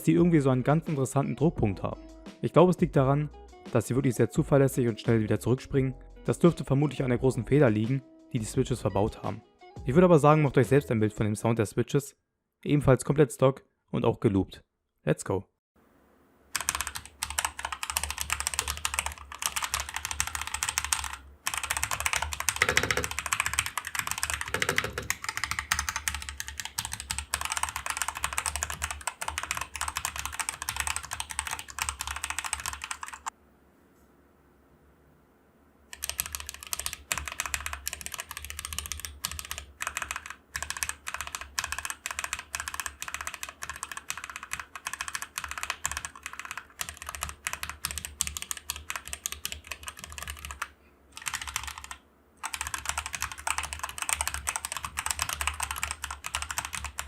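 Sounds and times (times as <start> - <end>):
mechanical keyboard typing: 16.5 - 33.3, 35.9 - 57.0.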